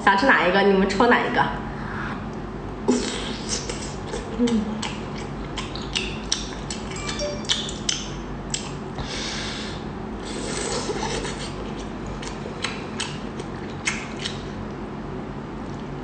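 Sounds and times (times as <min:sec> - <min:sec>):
wet chewing clicks: 0:03.7 - 0:08.8, 0:11.1 - 0:14.8.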